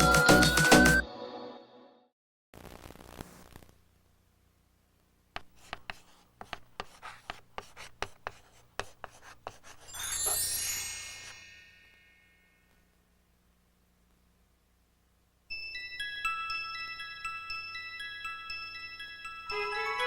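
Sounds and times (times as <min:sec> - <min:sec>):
shimmering chime flourish: 0:09.9 - 0:12.6.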